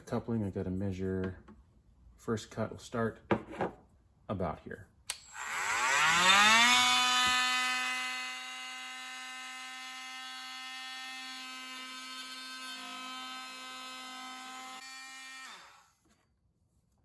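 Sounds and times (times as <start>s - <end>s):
power saw whining: 5.1s - 15.9s.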